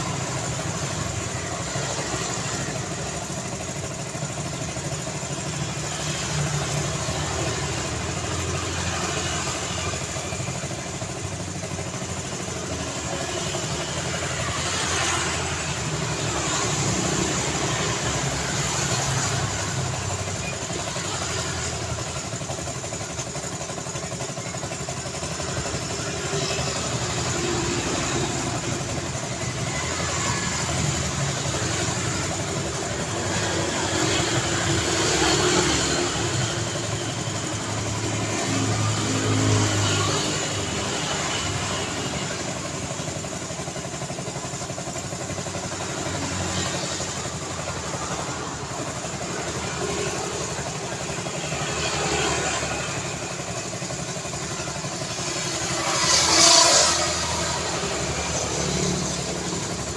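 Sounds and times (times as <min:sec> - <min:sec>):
vehicles passing: 0:00.0 - 0:59.9.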